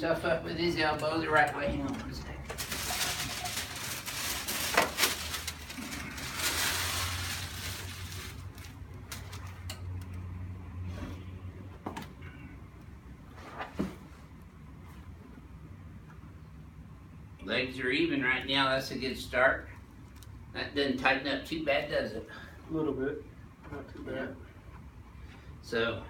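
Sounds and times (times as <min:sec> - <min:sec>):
rustling and shifting: 0:00.2 - 0:12.6.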